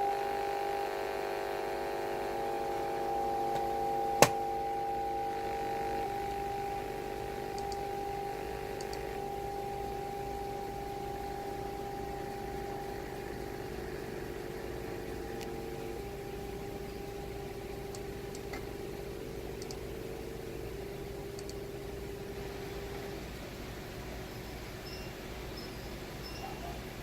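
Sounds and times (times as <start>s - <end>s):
low hum: 0.0s - 25.1s
computer electronic whine: 0.0s - 27.0s
faint clicks: 7.5s - 7.9s, 8.8s - 9.1s, 17.9s - 18.7s, 19.6s - 19.9s, 21.4s - 21.6s.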